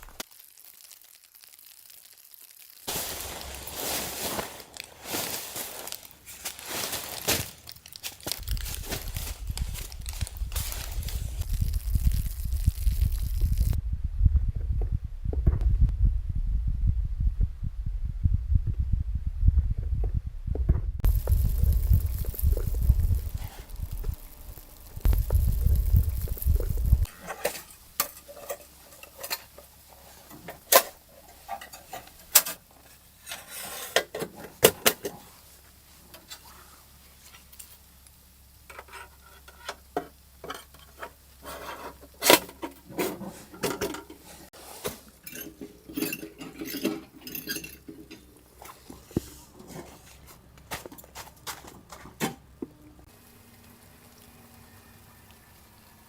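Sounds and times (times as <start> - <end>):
loud low rumble: 8.4 - 27.1
metal cookware clinking: 27.0 - 35.3, 38.7 - 48.8.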